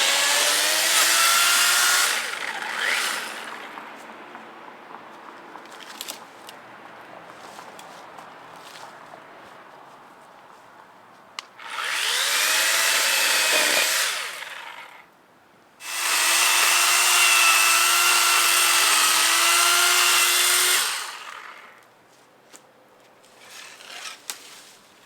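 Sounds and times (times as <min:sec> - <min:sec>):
electric power tool spinning: 0:00.0 - 0:03.8, 0:11.6 - 0:15.0, 0:15.8 - 0:21.8, 0:23.5 - 0:24.2.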